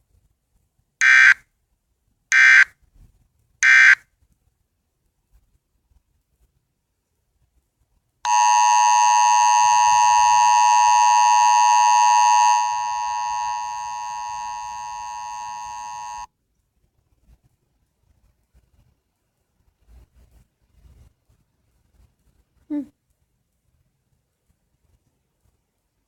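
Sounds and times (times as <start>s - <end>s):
two-tone alert signal: 8.3s - 16.3s.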